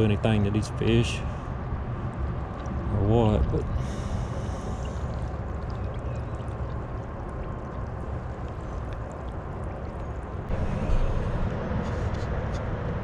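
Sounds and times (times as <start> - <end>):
water lapping around wading person: 1.3 - 10.5.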